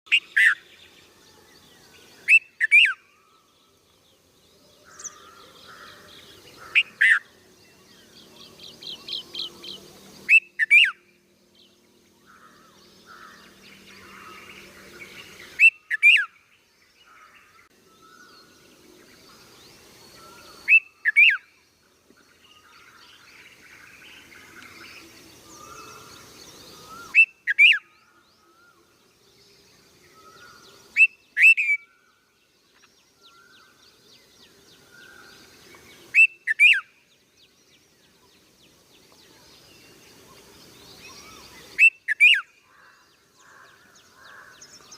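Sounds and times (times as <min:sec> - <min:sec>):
bird soft chirping: 0:00.1 - 0:44.9
bird sharp calls: 0:04.8 - 0:07.4, 0:12.2 - 0:16.4, 0:22.6 - 0:28.9, 0:30.1 - 0:32.0, 0:34.8 - 0:36.9, 0:40.3 - 0:44.9.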